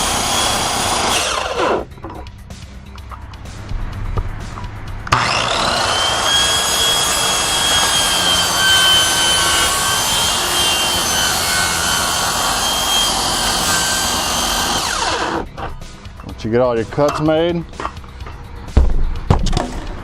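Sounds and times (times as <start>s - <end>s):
circular saw cutting: 0.0s - 1.9s, 5.1s - 15.5s.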